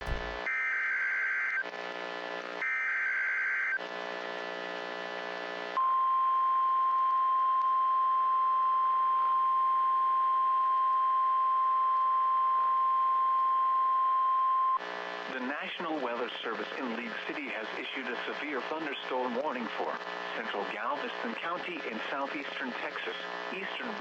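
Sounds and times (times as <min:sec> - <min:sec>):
steady warning alert tone: 0:00.0 - 0:00.4
radio hiss: 0:15.3 - 0:24.0.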